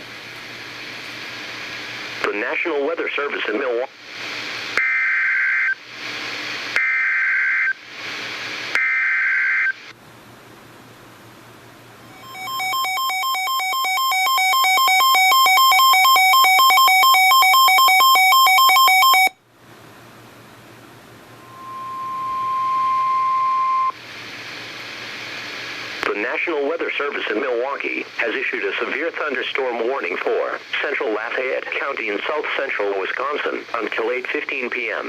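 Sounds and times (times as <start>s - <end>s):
radio hiss: 0.0s - 4.8s, 5.7s - 6.8s, 7.7s - 8.8s, 21.4s - 35.0s
steady warning alarm tone: 12.1s - 19.4s, 21.4s - 24.0s
rapidly pulsing electronic alarm beep: 12.2s - 19.4s, 21.4s - 24.0s.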